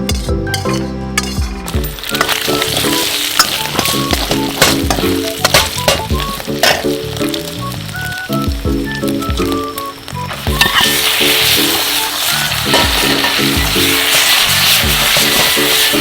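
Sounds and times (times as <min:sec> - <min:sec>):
spatula scraping metal wok: 0:00.0 - 0:06.9, 0:10.4 - 0:16.0
background music: 0:00.0 - 0:16.0
food sizzling in a wok: 0:00.0 - 0:16.0.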